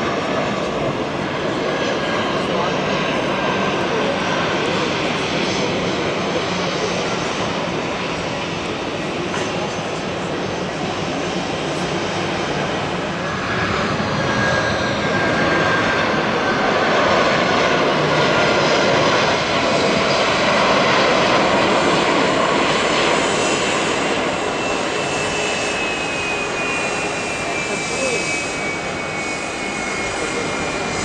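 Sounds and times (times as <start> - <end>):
jet airliner engines roaring: 0.0 - 31.0
high engine whine: 7.2 - 31.0.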